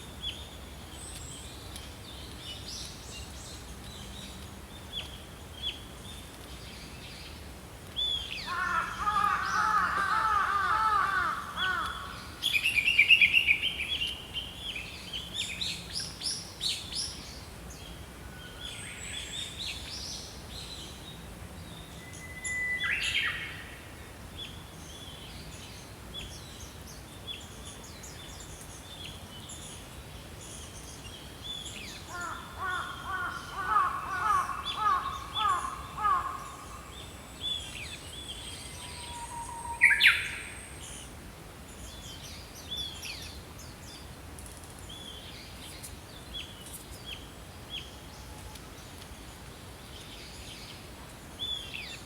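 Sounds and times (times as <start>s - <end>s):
steady outdoor hiss: 0.0s - 52.0s
birds calling and singing: 30.6s - 41.1s.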